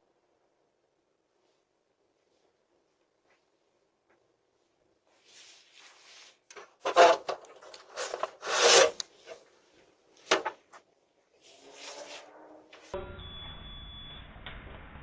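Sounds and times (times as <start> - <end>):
rough scraping: 6.0 - 9.0.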